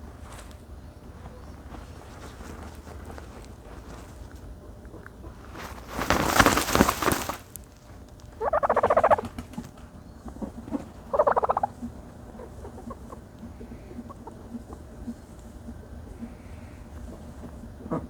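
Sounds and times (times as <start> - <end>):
dirt being scuffed and flung: 0.0 - 4.5, 5.2 - 8.1
turkey gobbling: 8.4 - 18.0.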